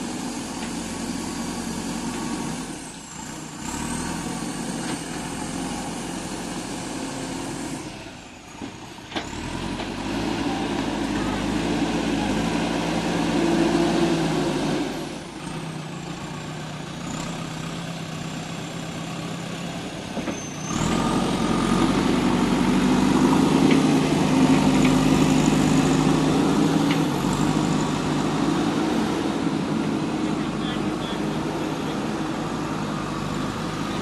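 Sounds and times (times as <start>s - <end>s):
diesel engine under load: 0.0s - 34.0s.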